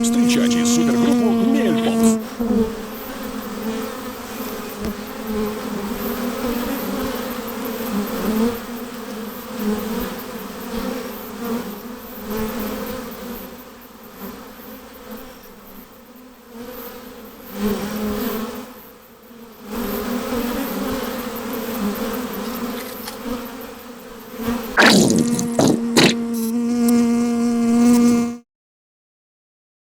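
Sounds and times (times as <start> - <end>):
bees buzzing: 0.0 - 13.4, 19.6 - 28.4.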